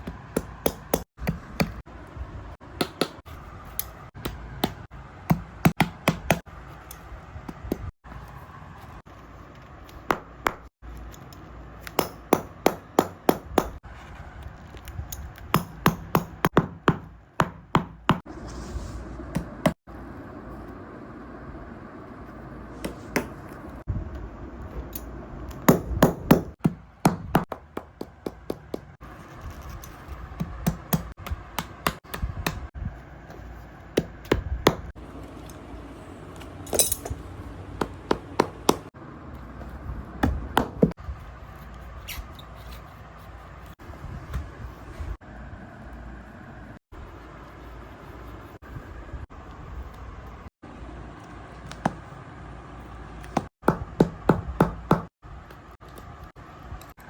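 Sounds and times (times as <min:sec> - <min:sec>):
hammer tapping: 0:00.0 - 0:01.8, 0:02.8 - 0:03.2, 0:11.8 - 0:13.8, 0:15.5 - 0:18.2, 0:25.7 - 0:29.0, 0:30.4 - 0:32.7, 0:34.0 - 0:34.9, 0:37.8 - 0:38.9, 0:53.2 - 0:55.1.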